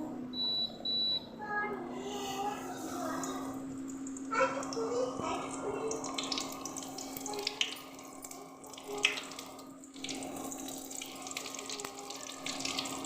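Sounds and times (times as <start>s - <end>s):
faint steady hum: 0.0s - 13.0s
oil crackling and popping: 3.8s - 13.0s.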